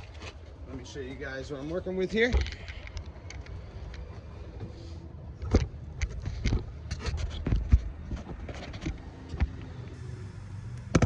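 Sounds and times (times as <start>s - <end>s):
light clicks and knocks of tools: 2.2s - 4.7s.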